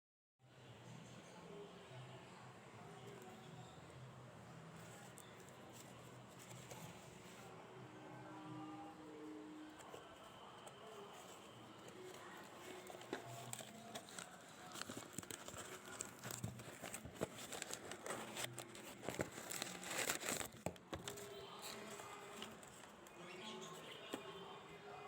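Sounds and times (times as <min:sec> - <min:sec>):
packaging crinkling and crackling: 0:11.1 - 0:23.0
packaging tearing: 0:12.6 - 0:21.3.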